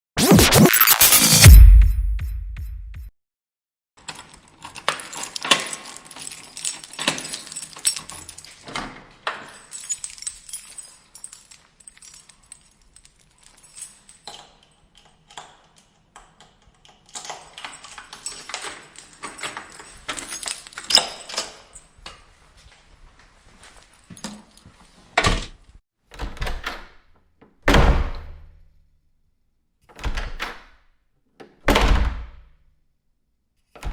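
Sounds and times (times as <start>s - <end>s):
keys jangling: 4.0s - 22.1s
door lock and handle clicking: 26.2s - 27.1s, 29.9s - 30.8s.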